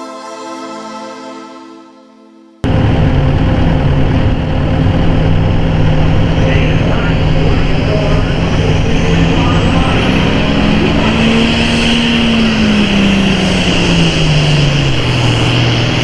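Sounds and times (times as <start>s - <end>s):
faint high whine: 2.6s - 16.0s
tractor diesel engine under load: 2.6s - 16.0s.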